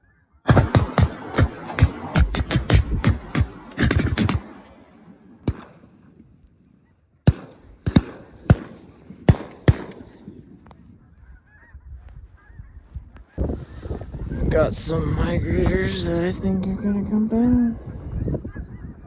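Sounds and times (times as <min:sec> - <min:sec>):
geese calling: 0:00.0 - 0:04.9, 0:08.5 - 0:14.6
shotgun shots: 0:00.5 - 0:06.4, 0:07.2 - 0:10.9.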